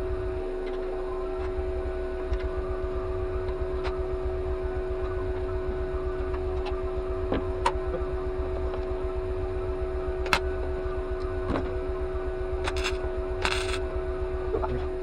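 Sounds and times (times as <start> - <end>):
machine hum pulsing: 0.0 - 15.0
sharp clicks and knocks: 12.6 - 13.8.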